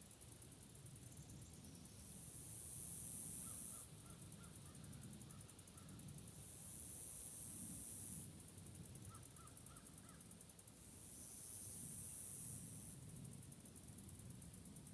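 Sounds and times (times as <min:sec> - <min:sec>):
distant crow caws: 0:09.1 - 0:10.2.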